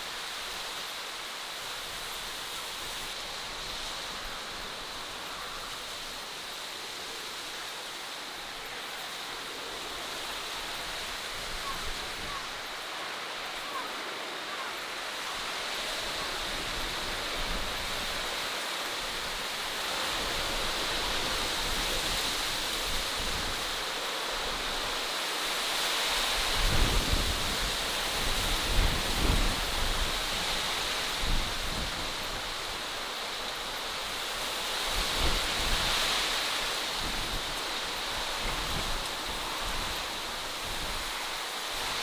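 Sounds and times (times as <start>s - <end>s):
rushing hiss: 0.0s - 42.0s.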